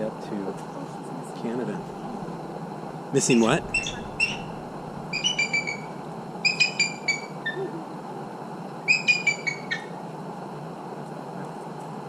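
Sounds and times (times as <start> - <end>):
eagle high piping calls: 3.4 - 7.9, 8.9 - 10.0.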